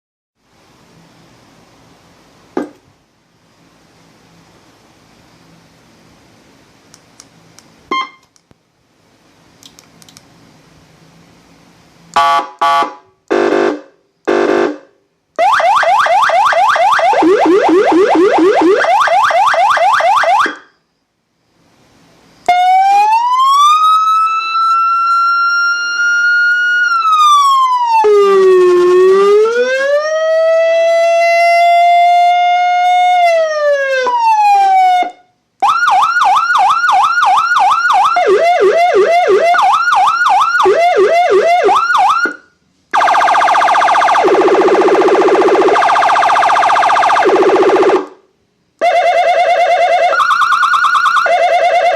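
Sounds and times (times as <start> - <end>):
electronic siren yelp: 7.9 - 8.2, 15.4 - 20.7, 22.4 - 48.2, 48.8 - 51.9
siren chirping pulses: 7.9 - 8.3, 15.4 - 20.8, 22.4 - 48.2, 48.8 - 51.9
electronic siren wail: 15.4 - 20.7, 22.4 - 48.2, 48.8 - 51.9.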